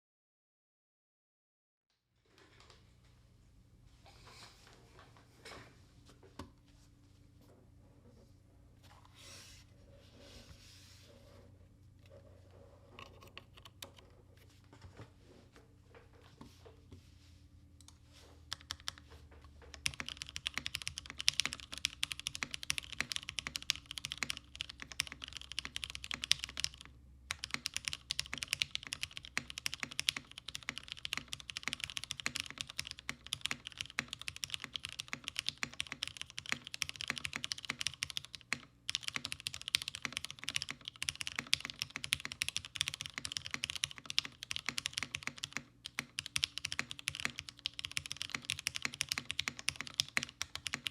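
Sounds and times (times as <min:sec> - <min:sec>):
mechanical keyboard typing: 0:18.5 - 0:50.9.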